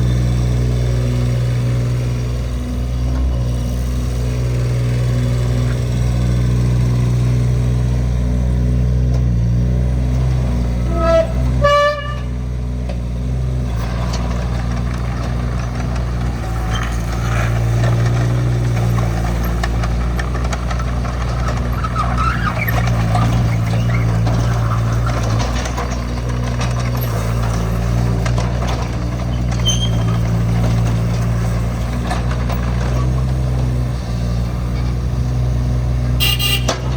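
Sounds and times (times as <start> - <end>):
diesel engine running: 0.0 - 36.9
rattling mechanical clatter: 10.8 - 36.9.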